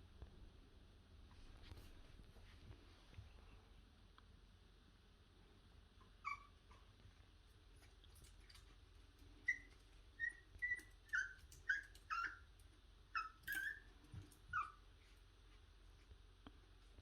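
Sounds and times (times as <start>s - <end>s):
puppy whining: 6.0s - 7.0s, 9.4s - 15.2s.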